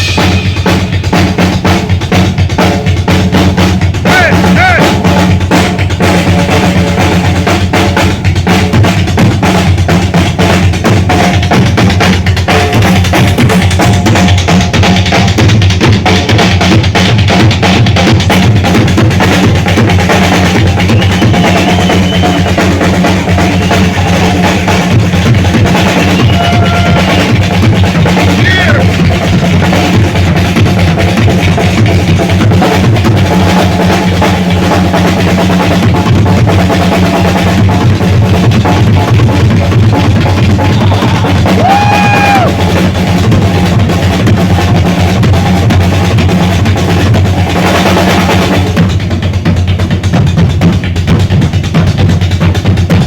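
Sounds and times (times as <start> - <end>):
heavy metal drum solo: 0.0 - 53.0.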